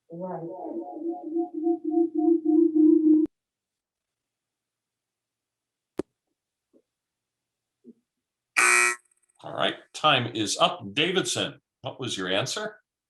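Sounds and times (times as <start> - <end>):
electronic buzzer: 8.6 - 9.0.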